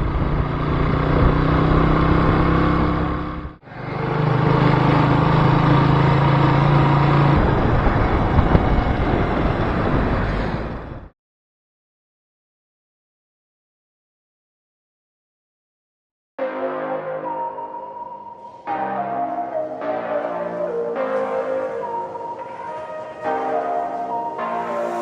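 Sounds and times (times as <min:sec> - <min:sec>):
motorcycle engine running: 0:00.0 - 0:10.3
rushing wind and road noise: 0:00.0 - 0:11.1.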